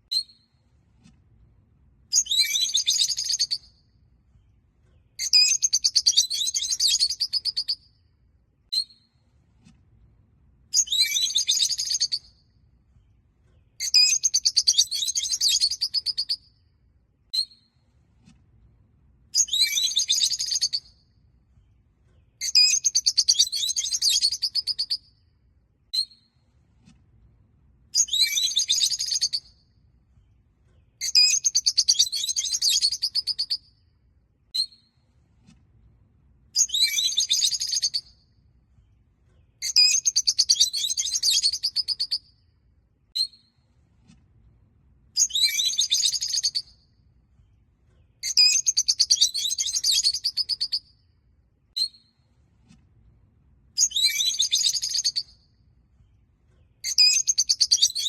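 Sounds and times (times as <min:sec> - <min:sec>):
single short bird chirps: 0:02.1 - 0:03.7, 0:10.8 - 0:12.4.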